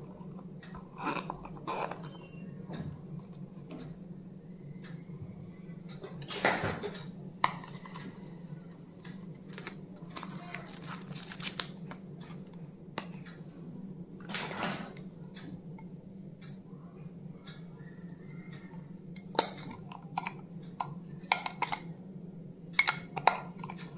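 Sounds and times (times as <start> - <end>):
steady low hum: 0.0 - 23.9
packaging rustling scrapes: 9.5 - 11.8.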